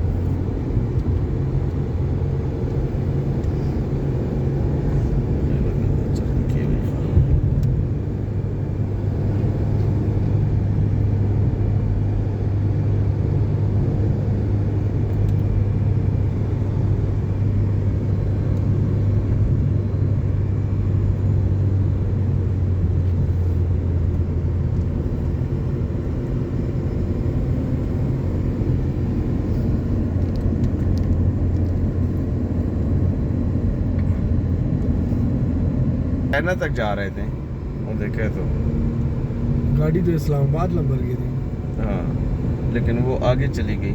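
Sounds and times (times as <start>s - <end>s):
car driving rumble: 0.0s - 43.9s.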